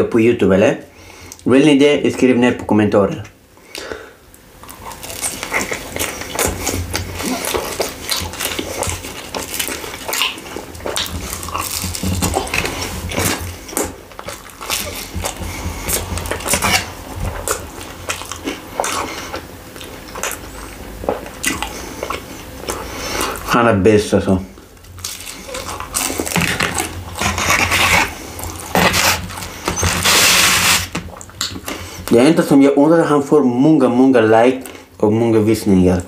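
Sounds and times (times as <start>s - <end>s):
chewing and mouth smacking: 4.6s - 23.5s, 24.5s - 32.2s.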